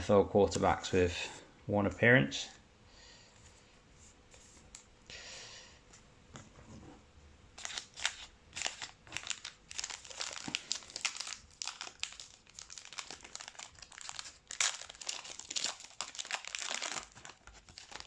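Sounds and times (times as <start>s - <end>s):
wrapper crinkling and tearing: 7.6s - 18.0s.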